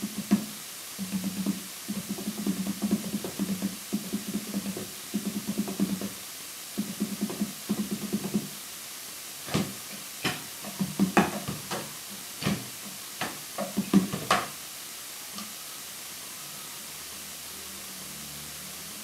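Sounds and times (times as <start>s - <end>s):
steady hiss: 0.0s - 19.0s
drums struck: 0.2s - 6.2s, 9.5s - 14.6s.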